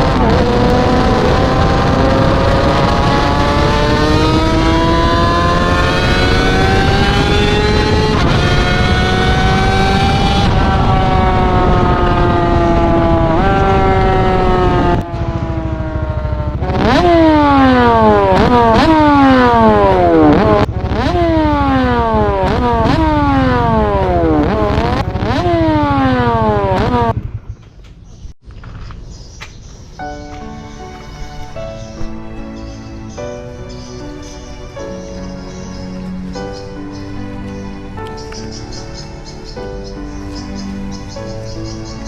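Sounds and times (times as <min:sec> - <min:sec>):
engine accelerating through gears: 0:00.0 - 0:28.4, 0:31.4 - 0:42.0
engine revving in blips: 0:00.0 - 0:28.4, 0:32.0 - 0:42.0.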